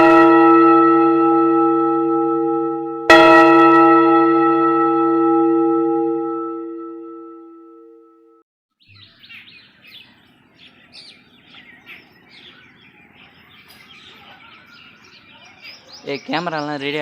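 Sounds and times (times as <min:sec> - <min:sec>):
bell ringing: 0:00.0 - 0:08.4
small birds chirping: 0:08.8 - 0:17.0.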